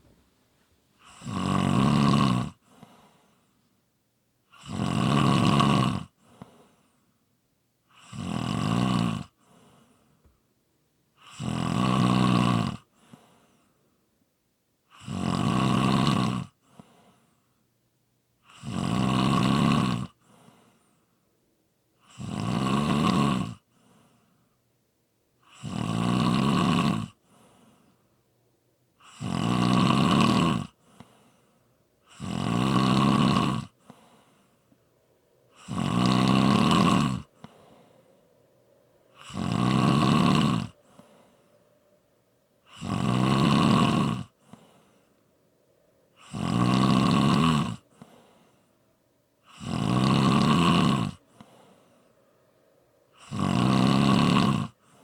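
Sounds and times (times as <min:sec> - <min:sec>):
person snoring: 0:01.0 - 0:02.6, 0:04.6 - 0:06.2, 0:07.9 - 0:09.4, 0:11.2 - 0:12.9, 0:14.9 - 0:16.6, 0:18.5 - 0:20.2, 0:22.1 - 0:23.6, 0:25.4 - 0:27.8, 0:29.0 - 0:31.3, 0:32.0 - 0:34.7, 0:35.5 - 0:38.5, 0:39.1 - 0:41.8, 0:42.6 - 0:45.2, 0:46.1 - 0:48.7, 0:49.4 - 0:52.1, 0:53.1 - 0:55.0.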